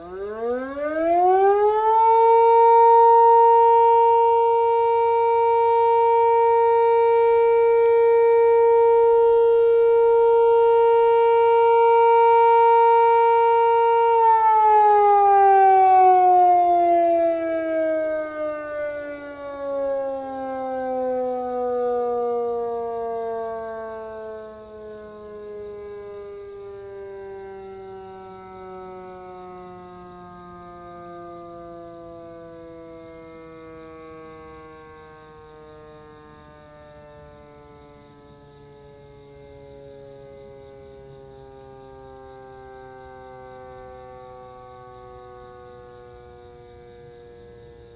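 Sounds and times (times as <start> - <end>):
motor siren wailing: 0.0 - 47.9.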